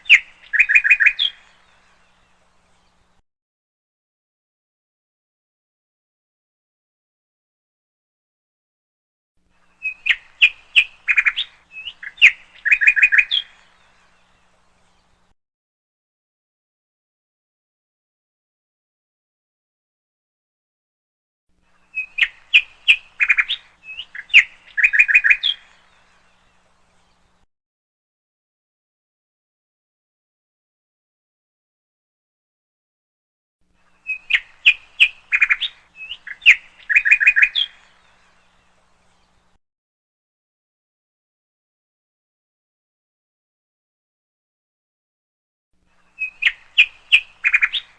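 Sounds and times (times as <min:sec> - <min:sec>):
bird chirping and trilling: 0:00.0 - 0:03.0, 0:09.7 - 0:15.2, 0:21.8 - 0:27.3, 0:33.9 - 0:39.4, 0:46.0 - 0:47.9.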